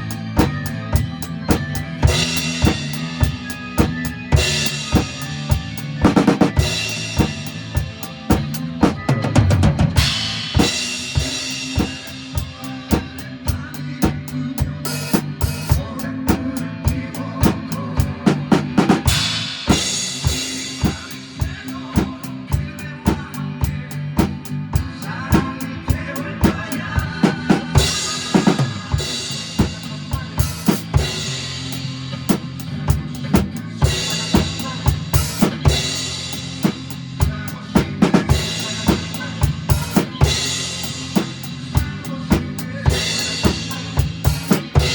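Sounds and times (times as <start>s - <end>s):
backing music: 0.0s - 44.9s
kick and snare beat: 0.4s - 12.1s, 24.2s - 25.5s, 32.3s - 36.0s.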